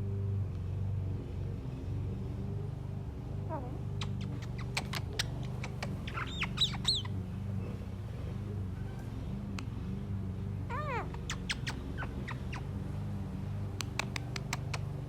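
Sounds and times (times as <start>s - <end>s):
myna bird calling: 3.5s - 7.1s, 10.7s - 12.7s.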